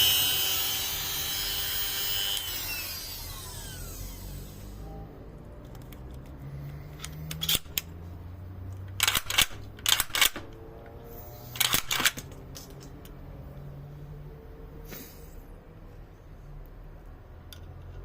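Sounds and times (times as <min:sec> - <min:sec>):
small metal parts clicking: 0:05.6 - 0:07.9, 0:08.7 - 0:13.2.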